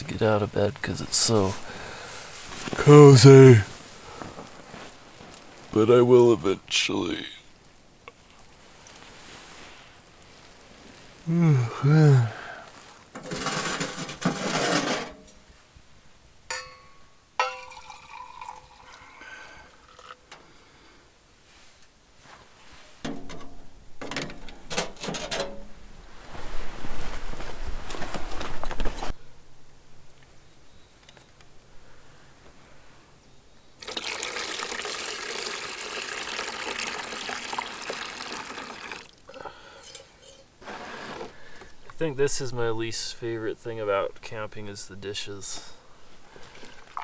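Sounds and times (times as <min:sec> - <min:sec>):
hard object clinking and ringing: 0:16.5 - 0:18.2
water pouring from a container: 0:17.6 - 0:20.2, 0:33.8 - 0:39.3.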